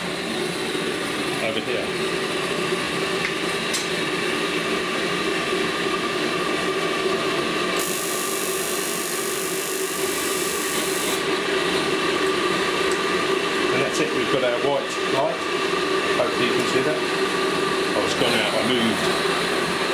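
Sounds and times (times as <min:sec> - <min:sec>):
gas boiler humming: 0:00.0 - 0:19.9.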